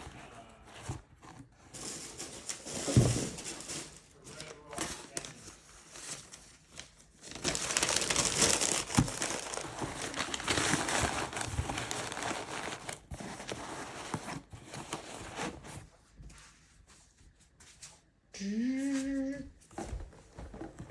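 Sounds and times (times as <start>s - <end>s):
packaging crinkling and rustling: 0.0s - 15.9s.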